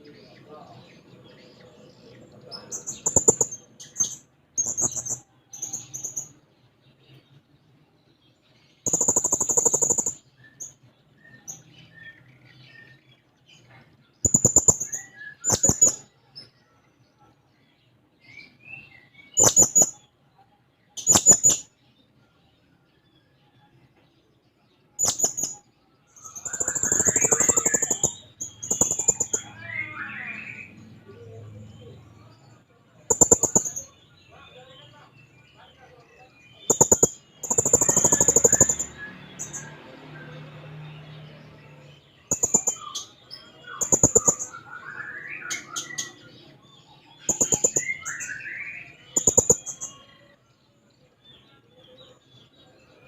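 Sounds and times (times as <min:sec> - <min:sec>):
squeaky bird twittering: 0:02.5 - 0:06.4, 0:08.8 - 0:13.0, 0:14.2 - 0:16.1, 0:18.4 - 0:20.1, 0:21.0 - 0:21.8, 0:25.0 - 0:32.2, 0:33.1 - 0:34.2, 0:36.3 - 0:40.4, 0:42.1 - 0:50.4
parrot shrill chattering calls: 0:26.4 - 0:29.8.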